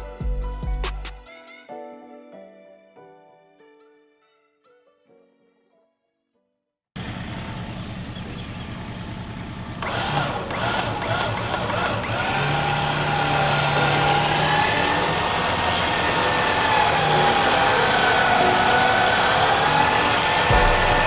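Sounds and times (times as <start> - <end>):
vehicle engine running: 7.0 - 21.0
clicks: 9.6 - 12.7.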